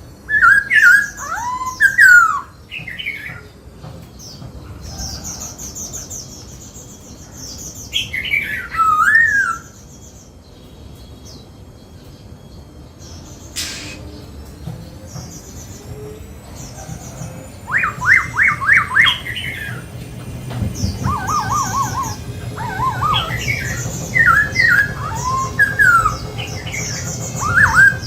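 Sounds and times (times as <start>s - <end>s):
bird singing gliding whistles: 0.0s - 3.6s, 4.9s - 28.0s
faint high rapid bird notes: 5.8s - 28.0s.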